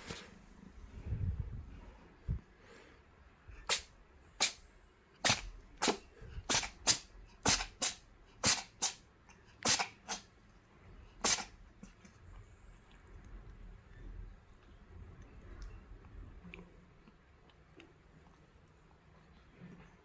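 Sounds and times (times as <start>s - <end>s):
cat sneezing: 3.6s - 4.6s, 5.2s - 9.0s, 9.6s - 10.3s, 11.2s - 12.0s.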